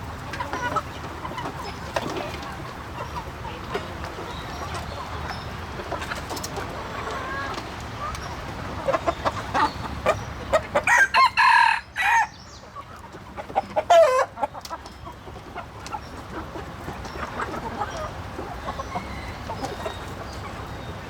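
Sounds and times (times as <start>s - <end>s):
chickens clucking: 0.0s - 21.0s
rooster crowing: 10.9s - 12.4s.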